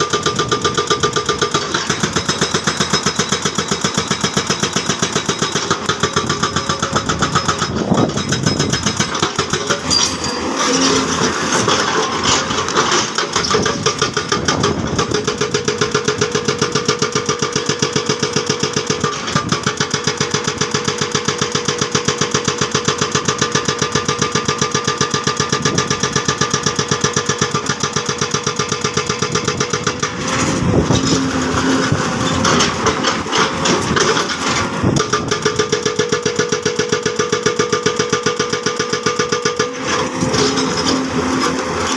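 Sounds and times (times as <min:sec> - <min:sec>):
hydraulic breaker hammering: 0:00.0 - 0:41.9
diesel engine running: 0:05.6 - 0:41.9
hydraulic whine: 0:06.3 - 0:15.9, 0:28.4 - 0:35.6.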